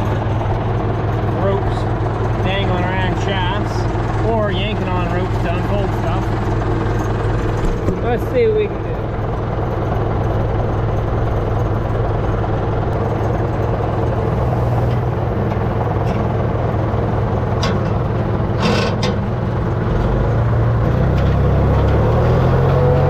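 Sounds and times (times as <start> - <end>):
tractor engine running: 0.0 - 23.0
short clatters: 17.6 - 20.1.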